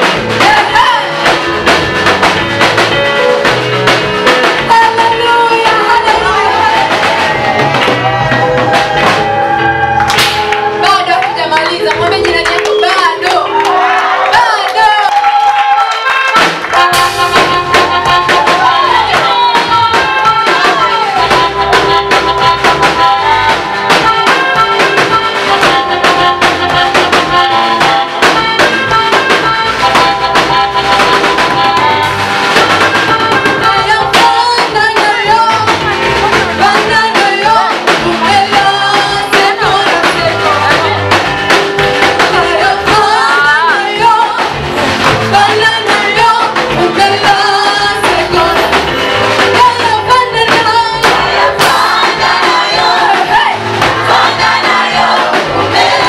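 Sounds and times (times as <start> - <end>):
gospel singing with band: 0.0 - 10.1, 11.2 - 56.0.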